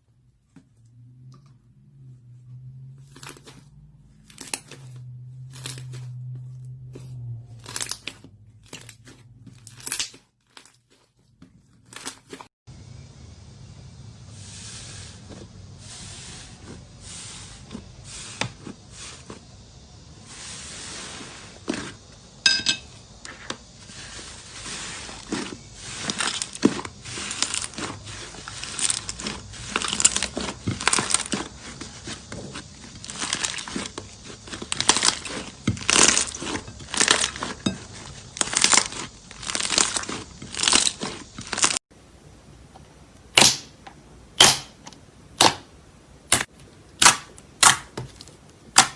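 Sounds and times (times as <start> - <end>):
slime crackling and popping: 4.2 - 6.1, 7.6 - 11.1, 25.1 - 41.8, 46.3 - 48.9.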